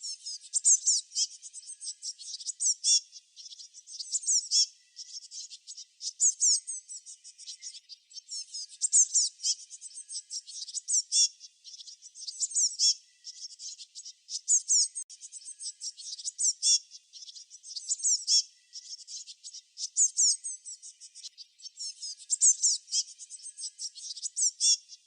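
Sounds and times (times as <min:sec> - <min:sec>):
songbirds chirping: 0:00.0 - 0:25.0.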